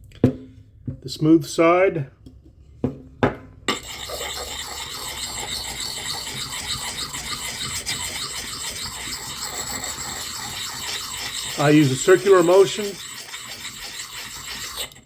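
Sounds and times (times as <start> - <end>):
sharpening stone grinding on blade: 3.7 - 15.0.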